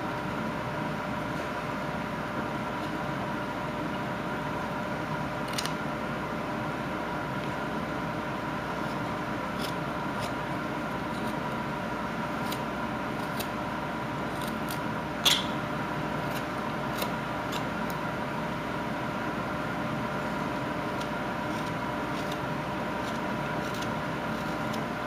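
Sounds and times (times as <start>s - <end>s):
knife clicks and scrapes on wood: 5.5s - 5.8s, 8.8s - 10.4s, 11.1s - 11.4s, 12.4s - 13.6s, 14.3s - 15.5s, 16.3s - 18.0s, 20.9s - 24.9s.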